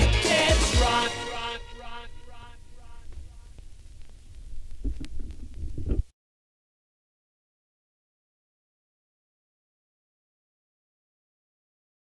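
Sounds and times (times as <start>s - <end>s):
pop band playing: 0.0s - 2.1s.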